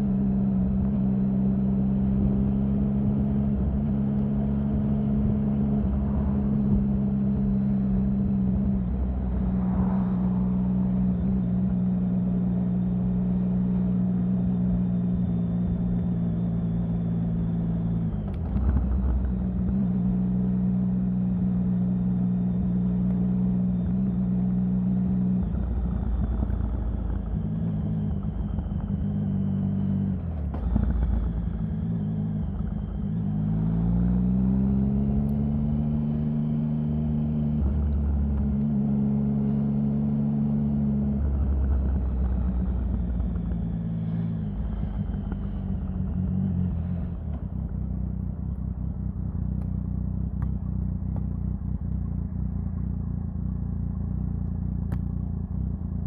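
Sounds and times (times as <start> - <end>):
motorcycle engine running: 0.0 - 56.0
low rumble: 2.2 - 20.6, 40.5 - 56.0.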